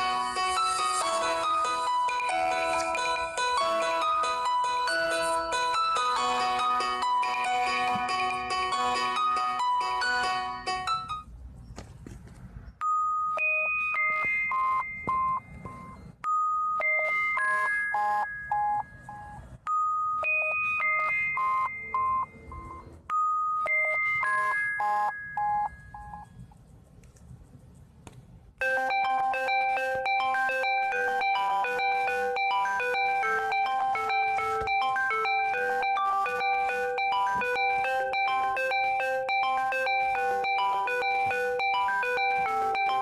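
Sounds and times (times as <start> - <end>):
busier phone ringtone: 0.0 - 11.3, 12.8 - 26.4, 28.6 - 43.0
phone ringtone chime melody: 0.0 - 11.3, 12.8 - 26.4, 28.6 - 43.0.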